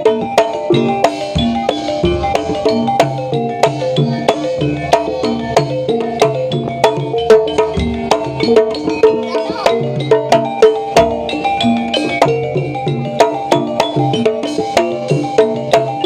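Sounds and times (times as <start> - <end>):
metallophone melody: 0.0 - 16.0
sharp drum strokes: 0.7 - 8.8.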